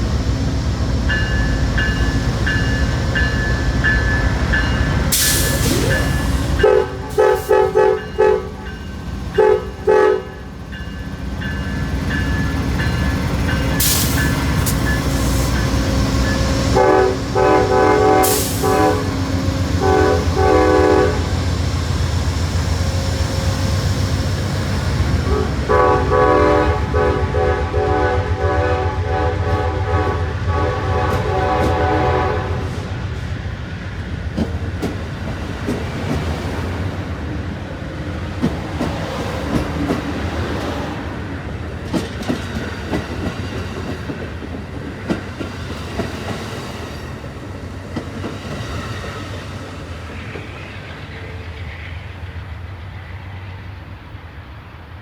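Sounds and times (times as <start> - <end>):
train wheels clicking on rail joints: 0.4 - 27.0, 31.0 - 53.8
train horn playing rhythmic blasts: 5.7 - 10.6, 15.5 - 21.5, 25.2 - 33.0.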